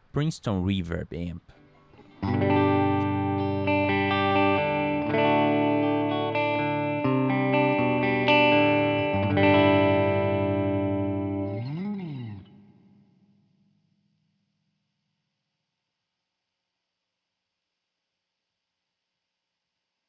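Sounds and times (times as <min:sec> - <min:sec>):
clean electric guitar chords: 0:02.0 - 0:12.6.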